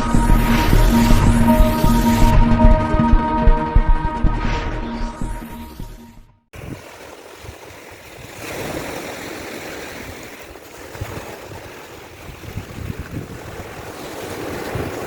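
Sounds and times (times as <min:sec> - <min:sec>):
sea waves washing onto beach: 0:06.6 - 0:15.0
wind buffeting microphone: 0:10.0 - 0:15.0.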